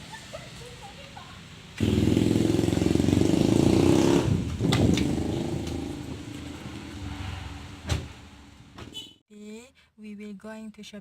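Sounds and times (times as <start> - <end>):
vehicle engine running loudly: 1.8 - 6.2.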